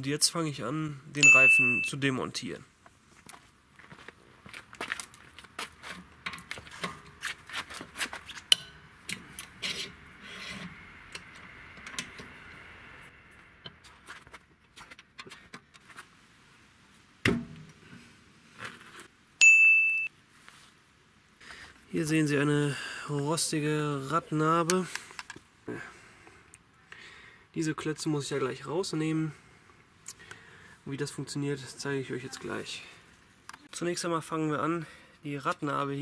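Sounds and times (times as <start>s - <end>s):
high-pitched beep: 1.2s - 2.0s, 19.4s - 20.1s.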